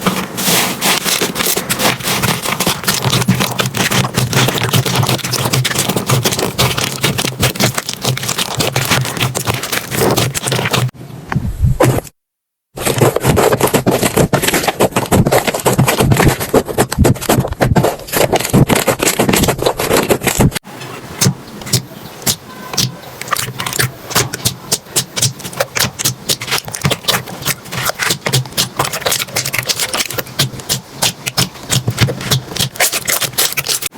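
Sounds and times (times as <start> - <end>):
slime crackling and squishing: 0.0 - 11.0, 21.2 - 33.9.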